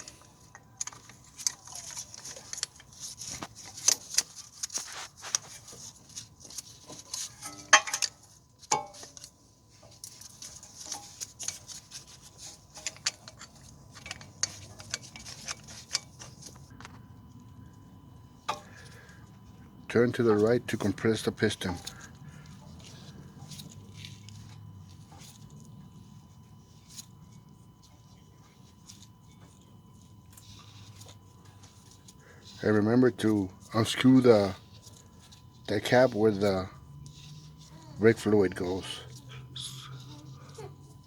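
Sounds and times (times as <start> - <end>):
metal tool clinking and rattling: 0.0 - 16.9.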